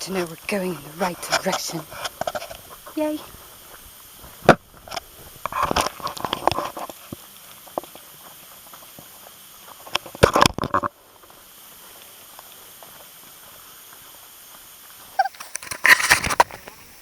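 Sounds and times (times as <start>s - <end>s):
faint steady hiss: 0.0s - 17.0s
footsteps crunching through dry leaves: 15.2s - 17.0s.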